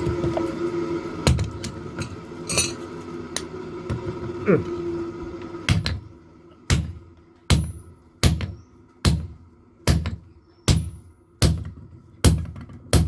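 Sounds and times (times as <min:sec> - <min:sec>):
hammer striking steel on anvil: 0:06.7 - 0:13.0.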